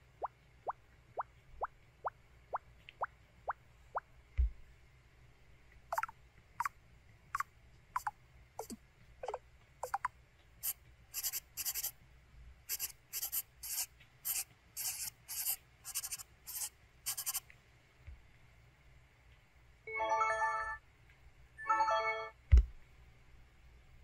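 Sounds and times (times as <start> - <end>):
scratchy scribbling strokes: 10.6 - 11.9, 12.7 - 17.4.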